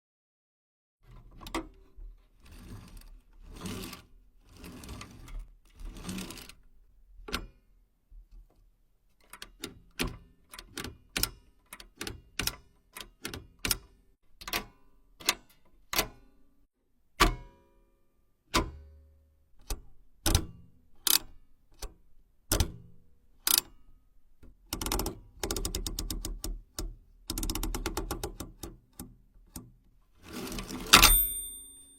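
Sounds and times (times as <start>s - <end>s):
bell-like ring: 31.0s - 31.9s.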